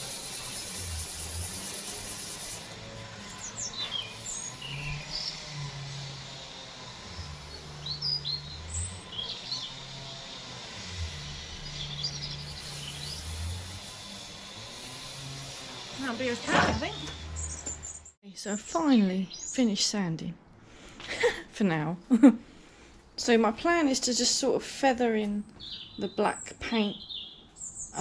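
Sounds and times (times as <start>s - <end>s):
small birds chirping: 3.2s - 6.1s, 7.2s - 13.7s, 16.0s - 19.8s, 25.3s - 28.0s.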